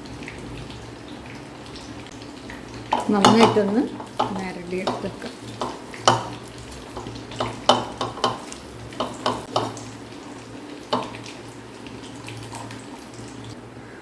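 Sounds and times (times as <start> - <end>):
kitchenware clinking: 2.9 - 9.8.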